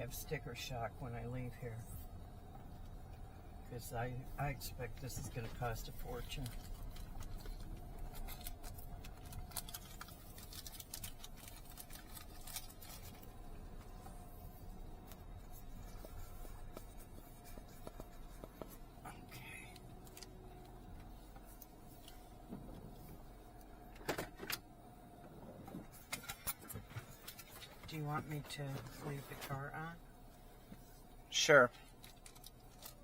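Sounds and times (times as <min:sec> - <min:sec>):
car engine running low: 0:00.0 - 0:33.0
small clicks and rustles: 0:05.2 - 0:29.6, 0:31.8 - 0:33.0.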